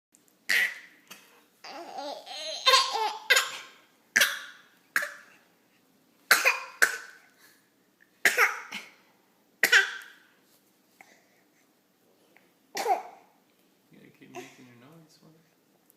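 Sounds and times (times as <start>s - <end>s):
baby coughing: 0.5s - 5.4s, 6.3s - 7.2s, 8.2s - 9.0s, 9.6s - 10.2s, 12.7s - 13.3s
baby laughing: 1.6s - 3.7s.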